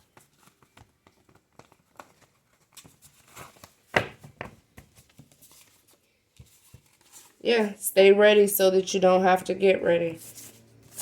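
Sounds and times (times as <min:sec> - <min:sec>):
cards clicking and rustling: 0:00.0 - 0:07.4.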